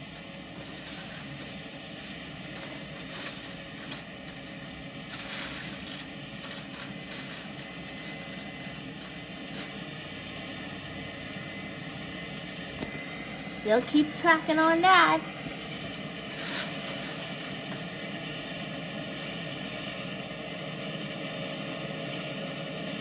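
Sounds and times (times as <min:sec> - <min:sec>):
combine harvester drone: 0:00.0 - 0:23.0.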